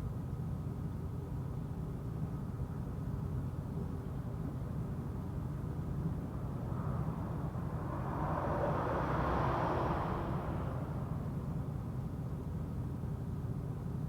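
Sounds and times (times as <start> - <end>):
vehicle passing by: 5.4 - 12.4
steady low rumble: 5.6 - 11.7.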